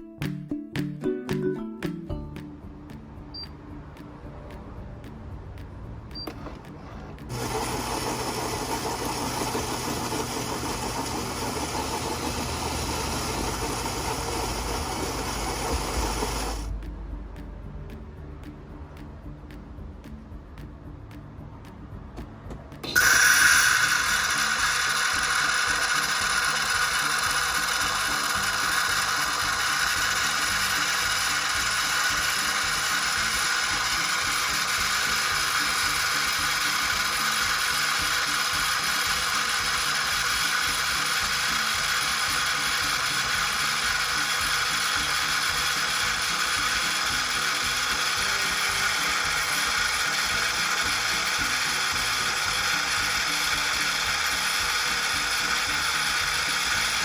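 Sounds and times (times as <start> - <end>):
coffee machine humming: 6.2 - 16.7, 22.8 - 57.0.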